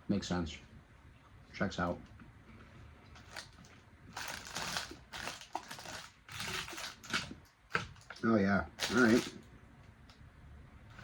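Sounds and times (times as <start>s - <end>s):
candy packaging crinkling: 3.1s - 9.4s.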